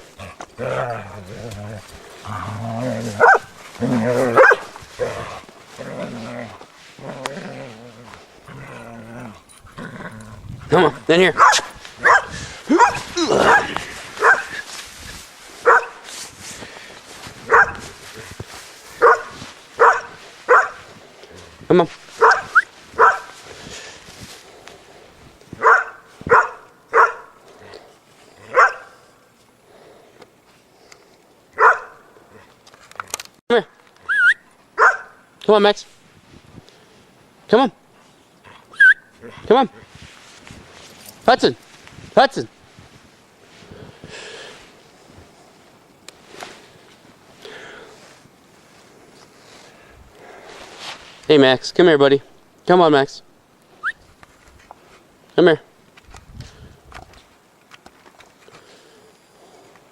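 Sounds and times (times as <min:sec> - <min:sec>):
dog growling: 0:00.0 - 0:14.7, 0:17.2 - 0:24.6, 0:38.4 - 0:40.0
dog barking: 0:03.2 - 0:05.2, 0:11.3 - 0:14.6, 0:15.6 - 0:16.0, 0:17.4 - 0:18.0, 0:19.0 - 0:20.9, 0:22.2 - 0:23.4, 0:25.6 - 0:27.3, 0:28.5 - 0:29.0, 0:31.6 - 0:32.0, 0:34.8 - 0:35.2.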